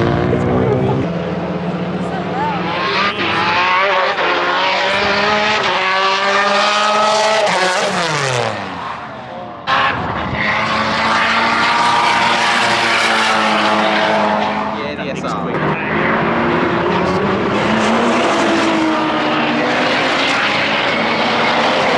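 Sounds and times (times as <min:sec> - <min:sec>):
car engine revving at high revs: 0:00.0 - 0:21.9.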